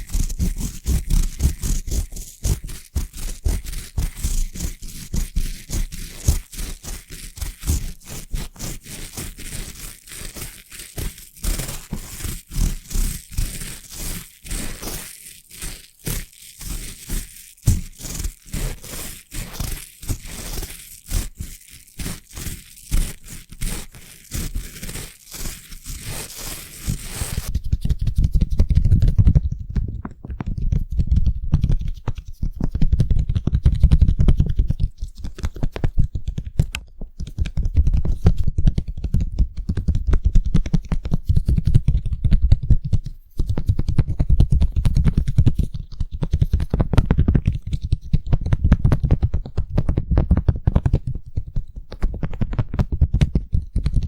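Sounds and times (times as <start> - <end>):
deep brush rubbing: 0.0 - 29.4
brush bristles scratching: 0.0 - 36.2, 37.2 - 49.6.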